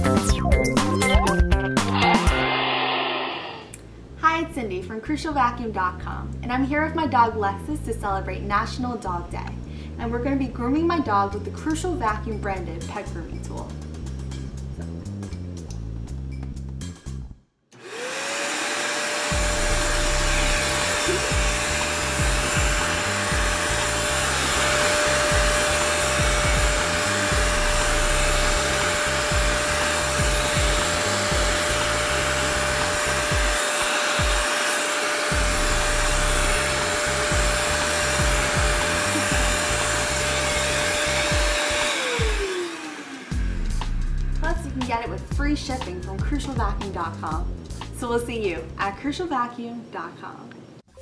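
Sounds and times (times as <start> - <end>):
vacuum cleaner motor whining: 2.0 - 3.8, 17.8 - 43.6.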